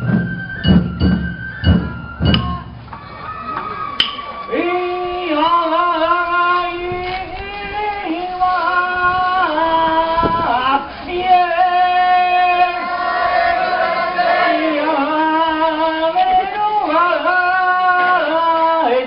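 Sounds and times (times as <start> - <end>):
high young voices chanting: 10.8 - 15.8.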